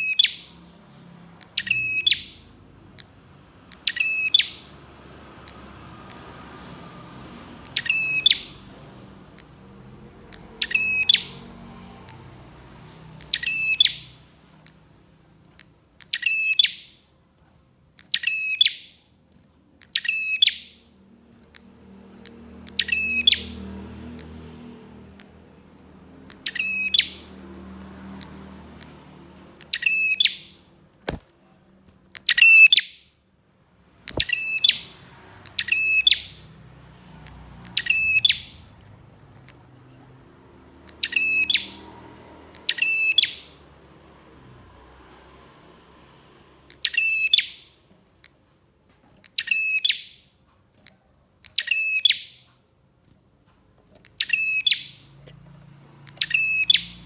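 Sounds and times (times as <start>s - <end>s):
bird calling in bright bursts: 0.0s - 6.4s, 7.5s - 12.3s, 13.1s - 14.8s, 16.0s - 17.1s, 18.0s - 19.0s, 19.8s - 20.9s, 21.5s - 24.4s, 26.2s - 27.4s, 29.6s - 31.2s, 32.1s - 33.0s, 34.0s - 36.5s, 37.2s - 38.8s, 40.8s - 43.6s, 46.6s - 47.9s, 49.2s - 50.3s, 51.5s - 52.4s, 54.0s - 55.2s, 56.0s - 57.0s
sharp clicks: 2.8s - 24.4s, 26.2s - 27.1s, 27.8s - 33.2s, 33.9s - 57.0s.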